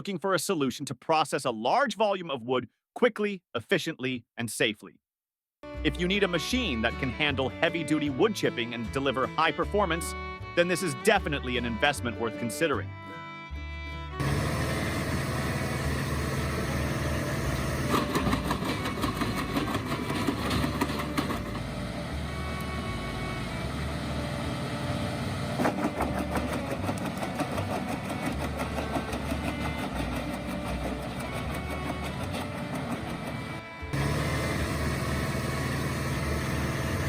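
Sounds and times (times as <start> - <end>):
wood chipper running: 14.1 - 37.0
wood cracking in chipper: 14.2 - 21.8, 25.5 - 33.2.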